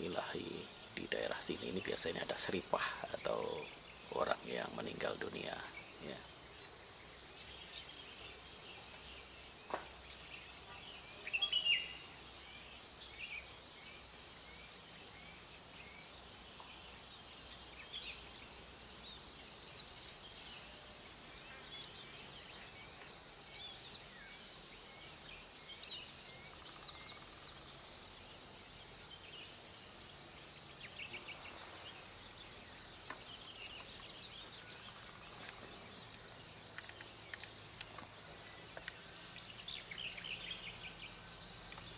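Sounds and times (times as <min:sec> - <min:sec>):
high drone of insects: 0:00.0 - 0:41.9
small birds chirping: 0:00.0 - 0:41.9.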